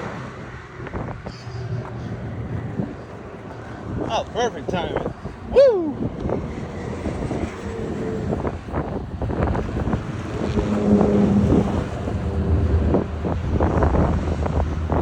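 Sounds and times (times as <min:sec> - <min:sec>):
wind on microphone: 0:00.0 - 0:15.0
train rumbling past: 0:06.4 - 0:15.0.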